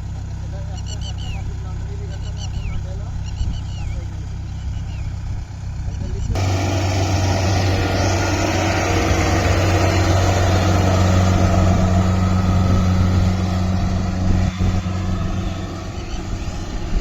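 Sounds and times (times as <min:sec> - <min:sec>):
diesel engine humming: 0:06.3 - 0:17.0
engine knock: 0:06.4 - 0:17.0.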